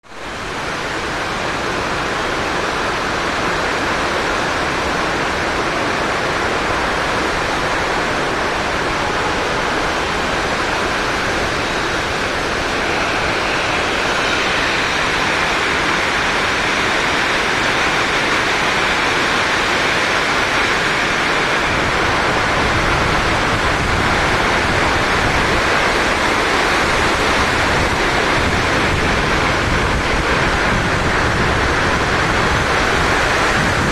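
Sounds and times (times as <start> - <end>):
heavy rain hiss: 0.0 - 33.9
deep rumble: 21.6 - 33.9.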